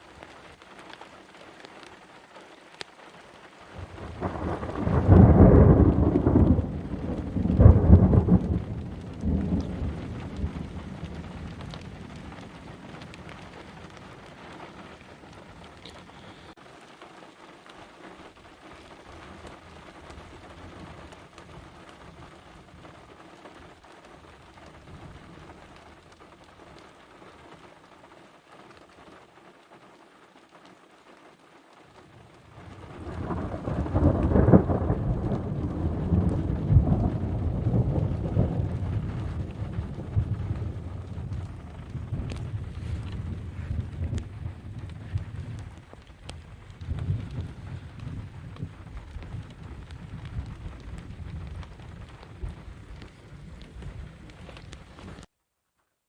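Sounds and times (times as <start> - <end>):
steady rain: 0.0 - 55.3
thunder rumbling: 3.7 - 16.6, 32.0 - 55.3.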